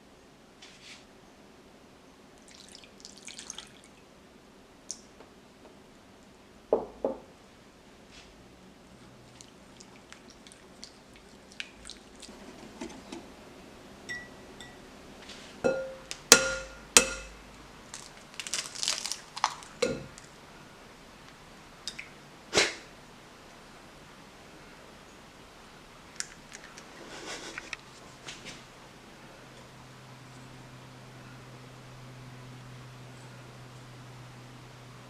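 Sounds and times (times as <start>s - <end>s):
utensils clinking against a bowl: 14.1s - 14.8s, 15.7s - 17.4s, 19.8s - 20.2s.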